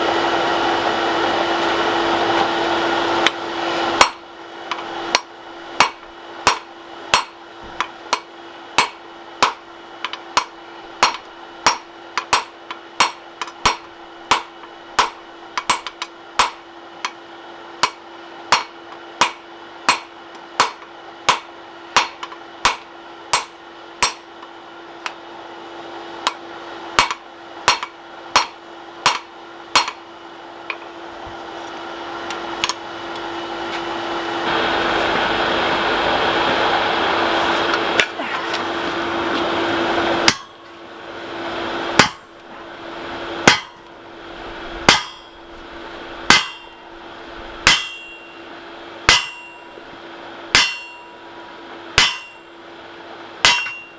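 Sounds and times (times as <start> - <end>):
low steady hum: 0.0 - 53.9
hammer clanging on anvil: 5.2 - 16.6, 17.8 - 24.3, 27.0 - 30.0, 40.3 - 40.6, 42.0 - 42.3, 43.4 - 43.8, 44.9 - 45.5, 46.3 - 46.8, 47.6 - 48.5, 49.1 - 49.8, 50.5 - 51.2, 52.0 - 52.5, 53.4 - 53.9.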